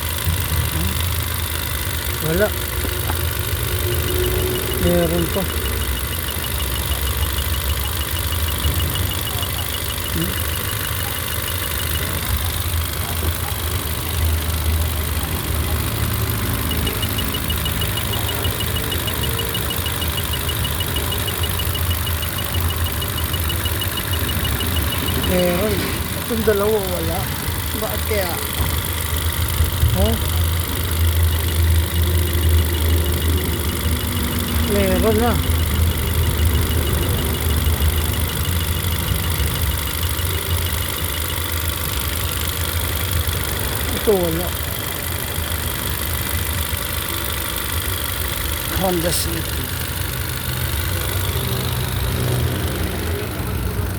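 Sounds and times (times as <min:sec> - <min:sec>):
car engine idling with misfire: 0:00.0 - 0:53.9
rapid high-pitched ticking: 0:00.0 - 0:53.9.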